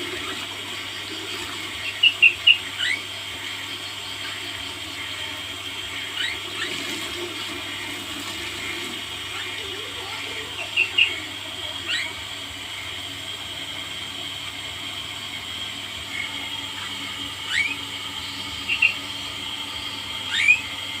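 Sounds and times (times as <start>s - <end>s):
songbird chirping: 16.8s - 20.7s.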